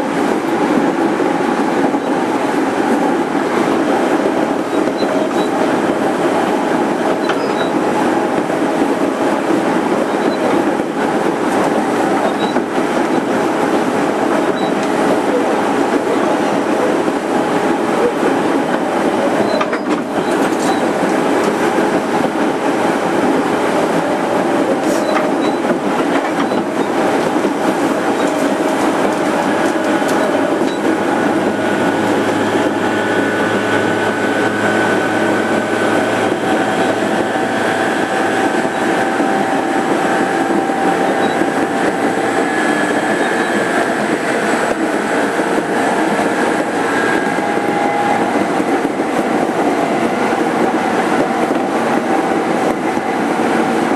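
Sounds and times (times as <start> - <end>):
train wheels rumbling on rail: 0.0 - 53.9
wheels clicking over rail joints: 24.7 - 32.8.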